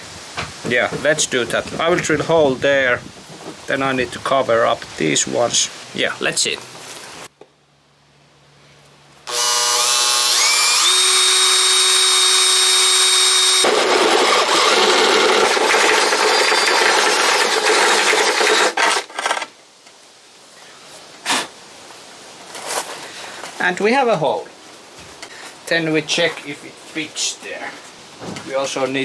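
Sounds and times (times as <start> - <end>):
electric drill boring: 9.3 - 19.4.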